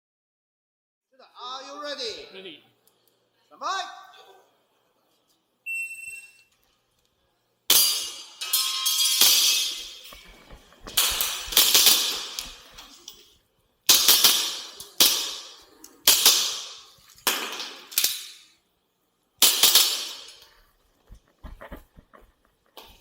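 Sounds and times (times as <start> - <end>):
airsoft pistol shots: 10.9 - 12.7, 13.9 - 18.2, 19.4 - 20.3.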